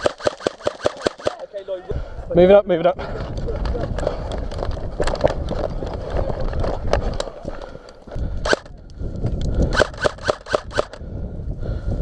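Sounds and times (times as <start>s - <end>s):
airsoft guns firing: 0.0s - 1.5s, 8.5s - 8.7s, 9.7s - 11.0s.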